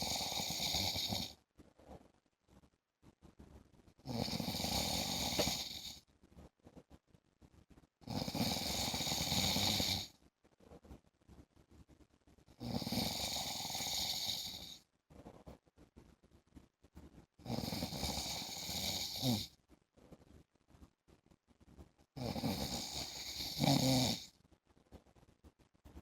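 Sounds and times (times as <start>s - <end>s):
man snoring: 0.0s - 1.3s, 4.1s - 6.0s, 8.1s - 10.1s, 12.6s - 14.8s, 17.5s - 19.5s, 22.2s - 24.3s
quiet breaths: 0.0s - 26.0s.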